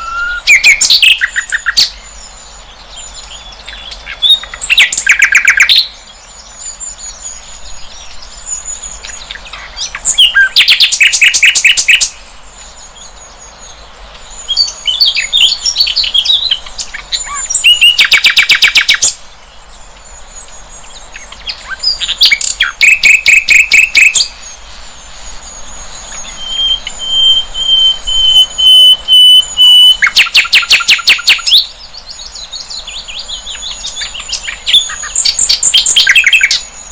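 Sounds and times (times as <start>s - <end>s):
thin high steady tone: 25.6s - 30.2s
flycatcher singing rapid notes: 26.2s - 31.6s.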